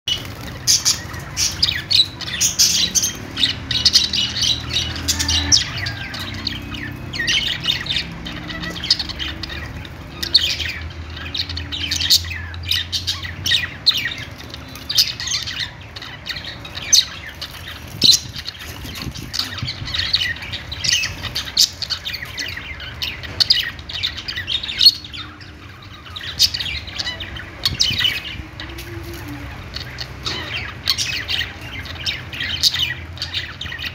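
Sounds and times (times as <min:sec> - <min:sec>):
budgerigars chirping and chattering: 0:00.1 - 0:33.9.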